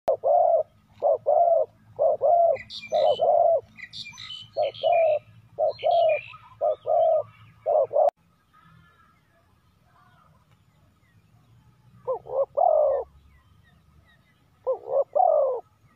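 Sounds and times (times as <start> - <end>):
dove cooing: 0.1 - 8.2, 12.0 - 13.1, 14.6 - 15.7
small birds chirping: 0.1 - 15.9.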